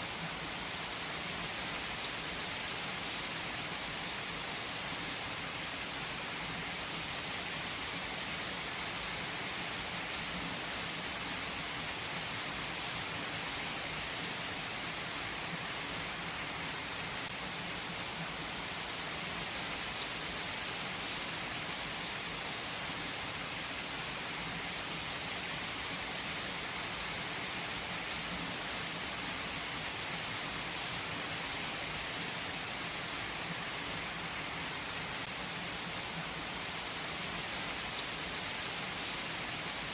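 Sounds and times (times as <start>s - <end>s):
heavy rain on leaves: 0.0s - 39.9s.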